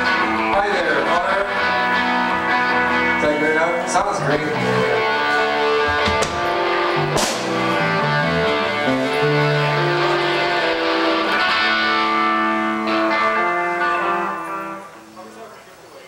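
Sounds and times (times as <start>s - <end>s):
live band playing guitar music: 0.0s - 15.6s
sharp hit: 7.0s - 7.8s.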